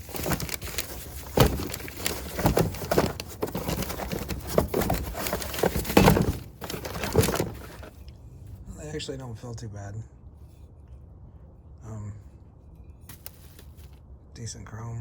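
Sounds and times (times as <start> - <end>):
packaging rustling and crinkling: 0.0 - 8.0.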